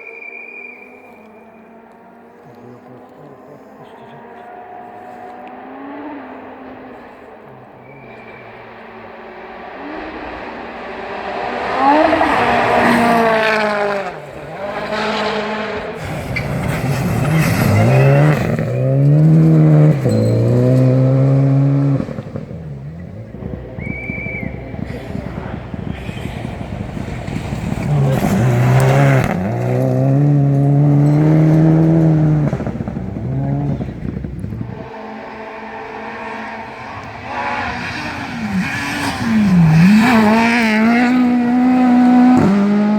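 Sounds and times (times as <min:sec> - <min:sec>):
brief high whistle: 0:00.0 - 0:01.7, 0:07.8 - 0:08.6
rally car engine revving: 0:00.0 - 0:42.9.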